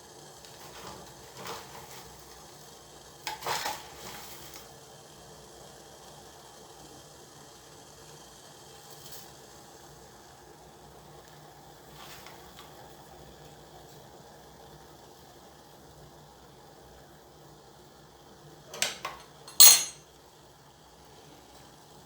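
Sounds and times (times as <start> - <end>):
utensils clinking on crockery: 18.7 - 20.0.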